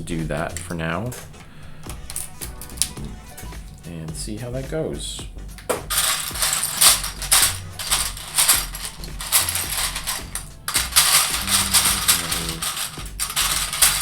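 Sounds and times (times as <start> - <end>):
plastic bricks clattering: 5.9 - 14.0.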